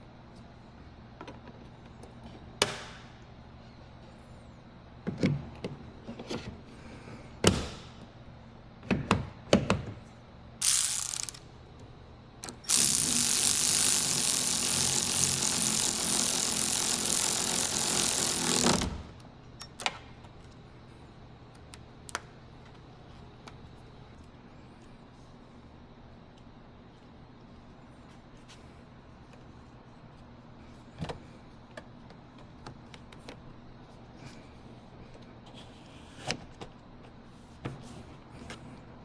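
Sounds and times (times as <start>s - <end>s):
ratcheting noise: 10.6s - 11.4s, 12.5s - 19.0s.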